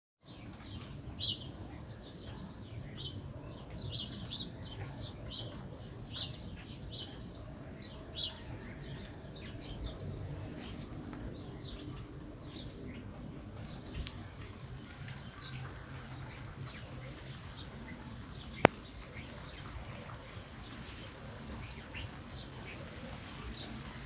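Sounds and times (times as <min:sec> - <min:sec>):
birds chirping: 0:16.2 - 0:19.6.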